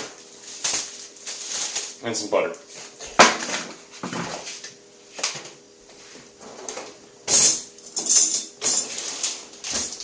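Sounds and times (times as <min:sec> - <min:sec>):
kitchen items knocking and rattling: 0:03.1 - 0:04.5, 0:06.4 - 0:10.0.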